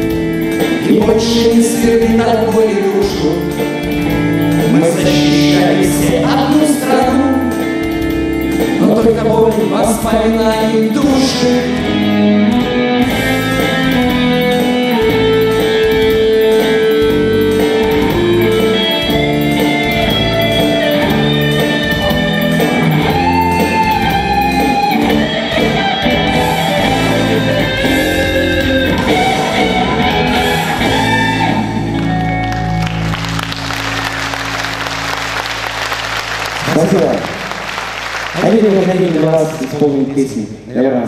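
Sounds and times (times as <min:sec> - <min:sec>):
guitar band music: 0:00.0 - 0:40.7
audience applause: 0:31.5 - 0:40.2.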